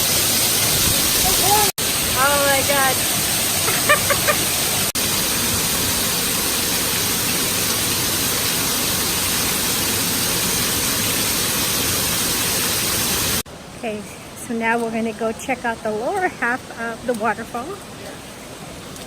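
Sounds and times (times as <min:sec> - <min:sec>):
waterfall rushing: 0:00.0 - 0:13.4.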